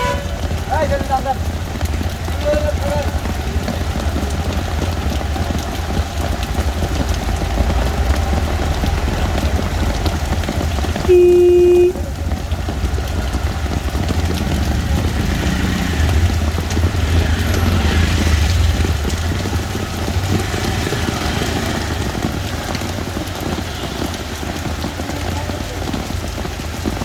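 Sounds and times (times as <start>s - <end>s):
car horn beep: 0.0s - 0.4s, 11.1s - 12.1s
rain on a street: 0.0s - 27.0s
vehicle engines rumbling: 0.0s - 27.0s.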